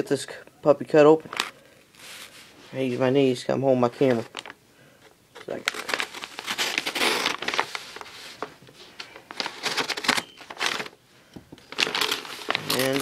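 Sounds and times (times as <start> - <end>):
plastic bag crinkling: 3.9 - 4.6, 5.3 - 11.0, 11.6 - 13.0.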